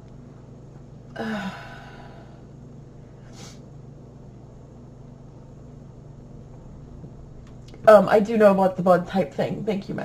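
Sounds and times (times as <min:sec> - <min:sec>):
low hum: 0:00.0 - 0:10.0
person sniffing: 0:03.3 - 0:03.6.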